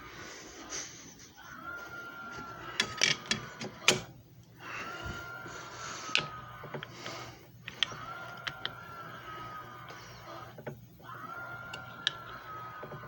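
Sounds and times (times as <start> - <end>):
small electric motor whining: 4.6 - 13.0.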